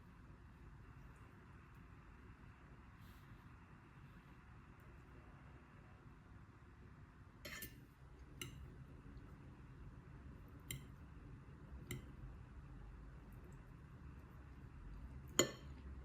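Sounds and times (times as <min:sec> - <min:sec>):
utensil clinking against dish: 0:15.3 - 0:15.8.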